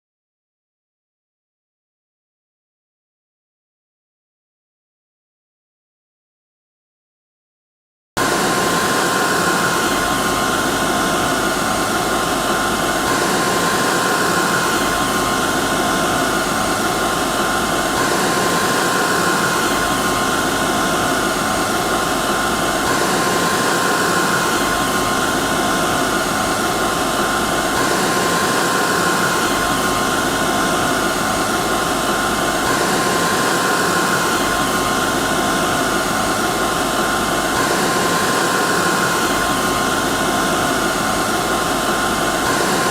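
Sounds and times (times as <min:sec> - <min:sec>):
hair dryer running: 0:08.2 - 0:42.9.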